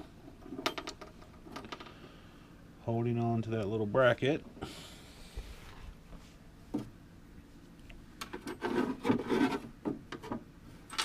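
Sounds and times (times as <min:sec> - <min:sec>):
parts rubbing and scraping: 0:08.2 - 0:11.0.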